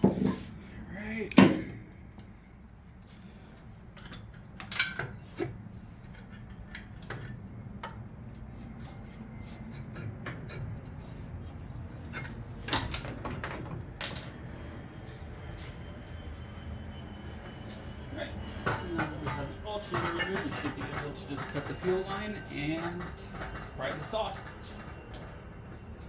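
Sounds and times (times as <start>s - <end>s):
tools and metal parts clanking: 0.0s - 1.9s, 4.0s - 7.4s, 12.0s - 14.6s, 19.3s - 25.3s.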